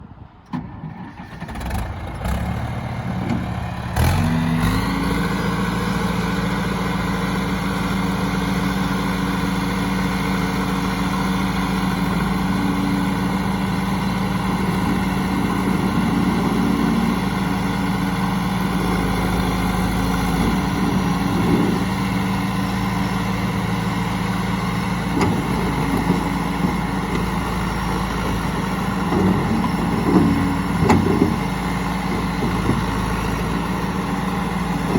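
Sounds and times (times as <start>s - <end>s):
diesel engine starting and running: 0.0s - 34.9s.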